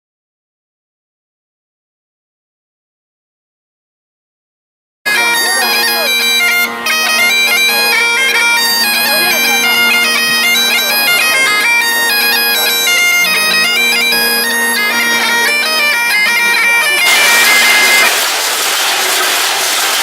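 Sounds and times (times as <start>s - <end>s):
bagpipes playing a tune: 5.1s - 20.0s.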